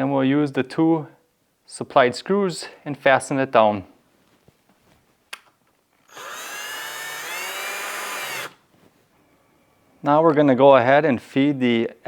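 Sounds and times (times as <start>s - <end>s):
power drill driving a screw: 6.1s - 8.6s.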